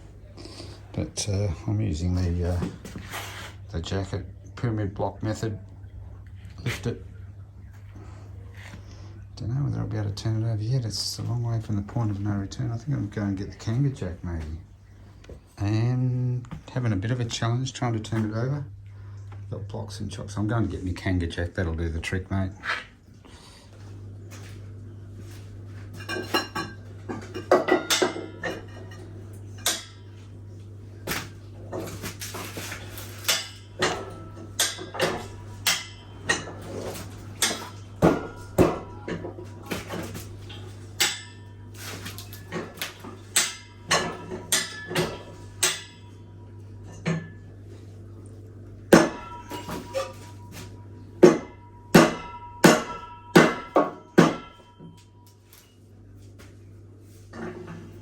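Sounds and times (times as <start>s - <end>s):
low hum: 3.4s - 22.0s
metal clanks with ringing: 42.5s - 46.2s, 49.0s - 55.8s.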